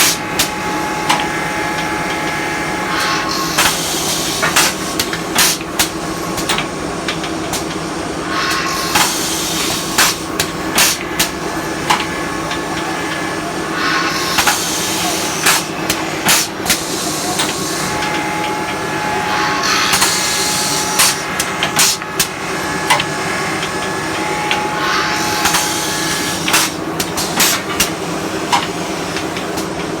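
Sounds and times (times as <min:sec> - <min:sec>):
motor hum: 0:15.8 - 0:28.8
machine clacks and knocks: 0:19.7 - 0:29.9.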